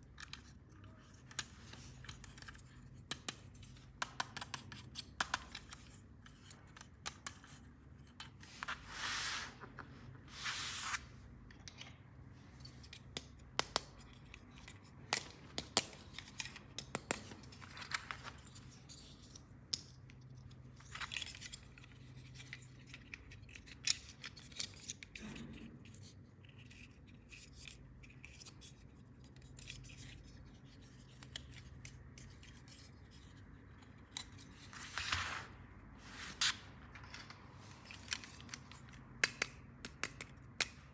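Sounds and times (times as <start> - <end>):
plastic packaging clicks and taps: 38.5 - 40.9.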